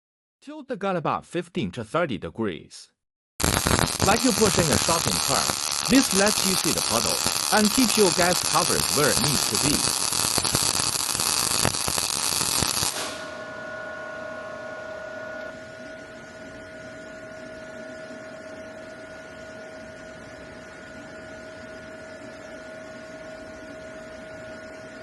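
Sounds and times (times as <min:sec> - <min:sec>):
welding arc hissing: 0:03.4 - 0:13.3
faint electrical hum with tone: 0:13.2 - 0:25.0.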